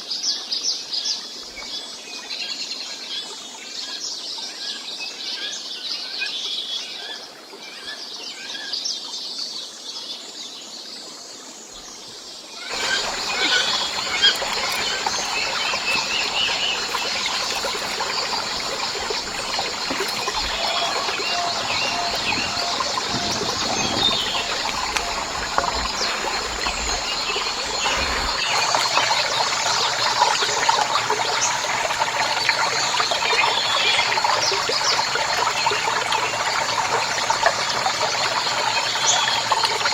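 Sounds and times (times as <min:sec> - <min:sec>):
birds chirping: 0:12.7 - 0:39.9.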